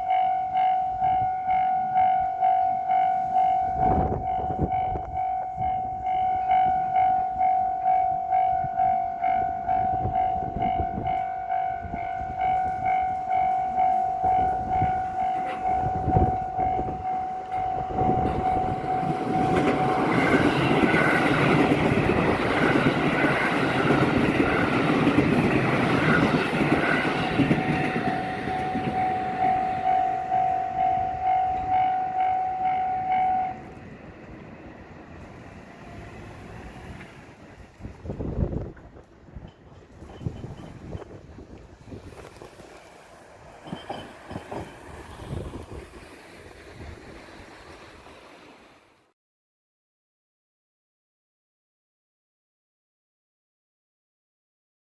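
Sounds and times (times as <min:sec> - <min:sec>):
level crossing bell ringing: 0:00.0 - 0:20.8, 0:27.2 - 0:33.7
train rumble and wheel noise: 0:00.0 - 0:49.1.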